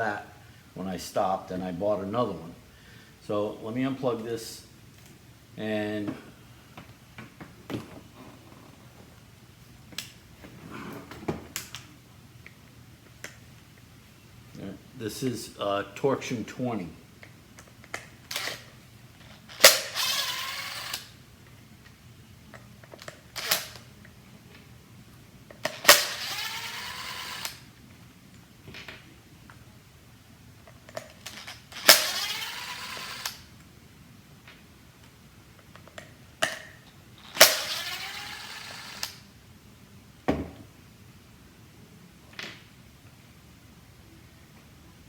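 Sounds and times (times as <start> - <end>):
cordless screwdriver motor whirring: 18.3 - 18.7, 19.4 - 21.2, 23.3 - 23.9, 25.7 - 27.7, 31.3 - 33.5, 37.2 - 39.2.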